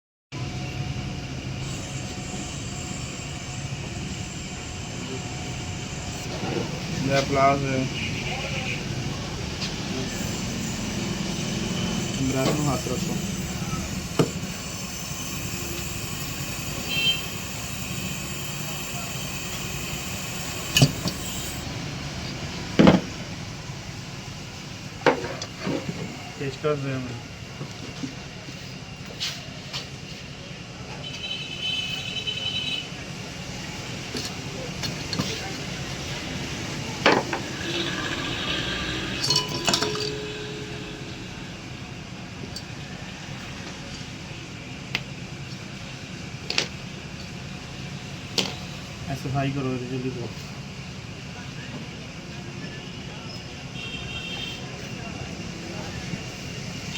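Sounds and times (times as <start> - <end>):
steady background hum: 33.2 - 52.4
metallic clinks of hand tools: 39.2 - 40.5.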